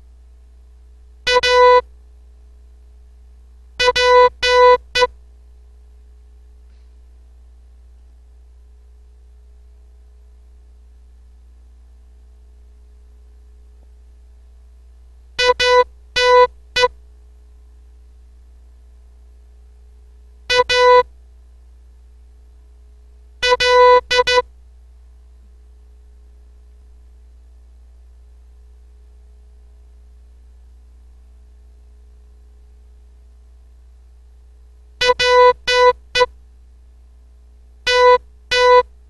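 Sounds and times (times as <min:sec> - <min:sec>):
faint low hum: 0:00.0 - 0:39.0
morse code beeps: 0:01.3 - 0:01.8, 0:03.8 - 0:05.1, 0:15.4 - 0:16.9, 0:20.5 - 0:21.0, 0:23.4 - 0:24.4, 0:35.0 - 0:36.3, 0:37.9 - 0:38.8.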